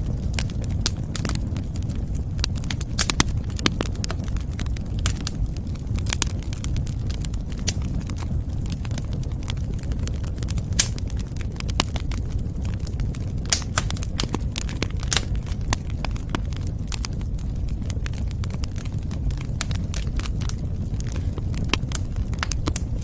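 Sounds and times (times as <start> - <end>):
fire popping and snapping: 0.0 - 23.0
wood fire crackling: 0.0 - 23.0.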